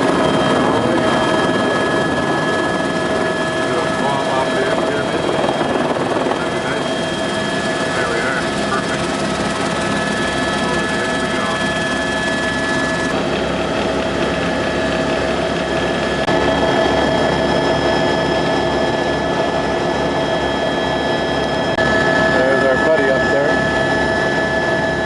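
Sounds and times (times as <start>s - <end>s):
helicopter turbine and rotor: 0.0s - 25.0s.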